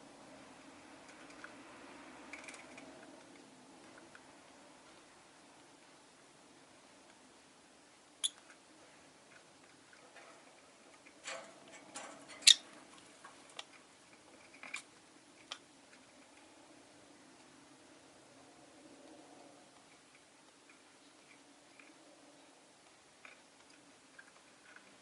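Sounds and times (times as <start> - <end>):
faint steady hum: 0.0 - 25.0
lovebirds squeaking and clicking: 8.2 - 8.5, 12.0 - 12.8.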